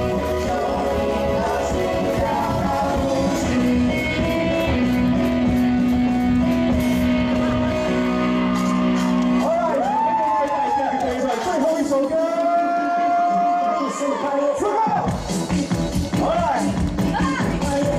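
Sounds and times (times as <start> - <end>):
person singing: 0.0 - 5.8
rock band playing: 0.0 - 10.4, 14.8 - 17.9.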